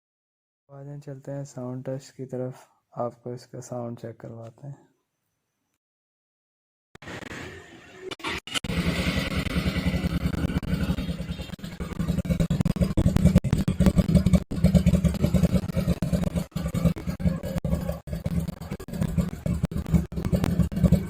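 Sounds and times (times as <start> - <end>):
motorcycle engine revving: 7.0 - 21.0.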